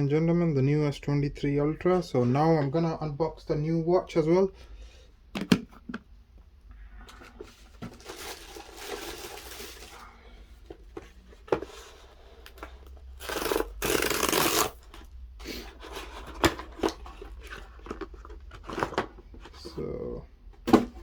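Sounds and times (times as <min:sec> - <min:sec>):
cardboard packaging scraping and rubbing: 0:07.4 - 0:10.0, 0:10.8 - 0:19.8
packaging tearing: 0:13.2 - 0:14.9.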